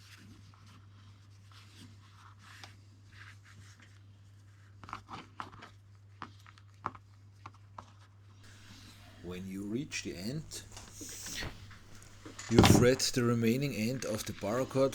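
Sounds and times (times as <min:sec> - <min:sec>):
cord handling scratches and clicks: 0:08.5 - 0:14.9.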